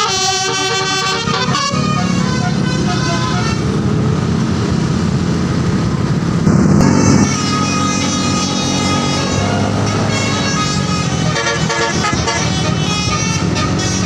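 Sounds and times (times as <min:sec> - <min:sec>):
bus horn playing musical tones: 0:00.0 - 0:03.9, 0:06.8 - 0:14.0
bus engine running: 0:00.0 - 0:14.0.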